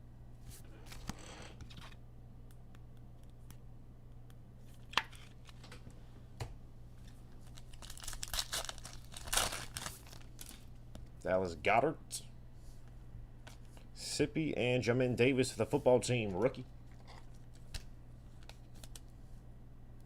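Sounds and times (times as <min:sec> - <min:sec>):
faint steady hum: 0:00.0 - 0:20.0
plastic wrapper crinkling: 0:07.0 - 0:10.8, 0:16.8 - 0:19.1.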